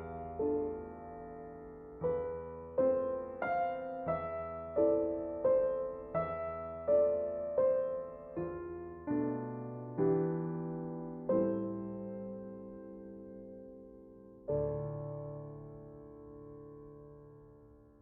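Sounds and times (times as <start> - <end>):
slow gentle piano music: 0.0 - 18.0.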